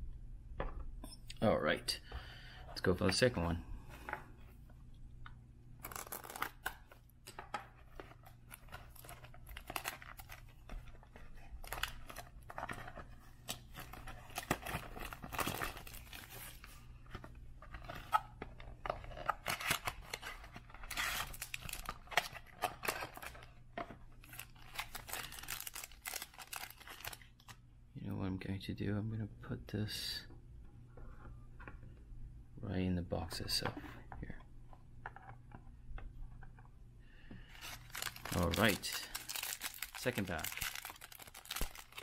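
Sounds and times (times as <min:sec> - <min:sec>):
card pack wrapper tearing: 0:05.8 - 0:07.4, 0:08.5 - 0:10.5, 0:13.5 - 0:16.6, 0:19.1 - 0:23.4, 0:24.2 - 0:27.6, 0:37.6 - 0:42.0.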